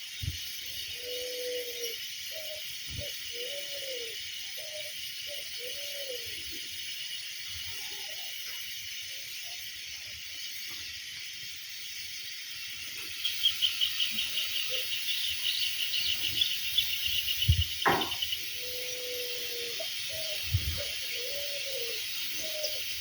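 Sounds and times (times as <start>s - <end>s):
bird chirping: 0.0s - 23.0s
high insect drone: 0.0s - 23.0s
short thump: 17.5s - 18.3s.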